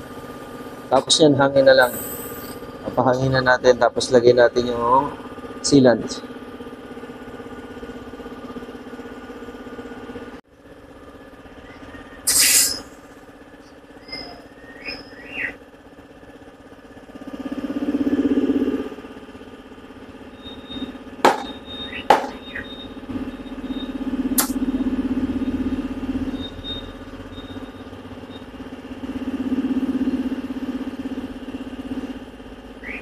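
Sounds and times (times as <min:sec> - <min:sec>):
machine hum: 0:00.0 - 0:33.0
burst of hissing air: 0:01.8 - 0:02.6, 0:12.2 - 0:12.9
small squeaks: 0:11.8 - 0:13.0
sharp clicks: 0:24.4 - 0:24.6.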